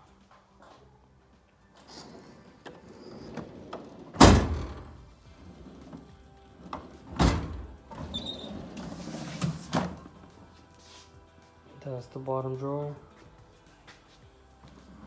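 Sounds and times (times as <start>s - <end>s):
drawers clicking and sliding: 1.8s - 10.2s
steel drawers banging shut: 1.9s - 10.1s.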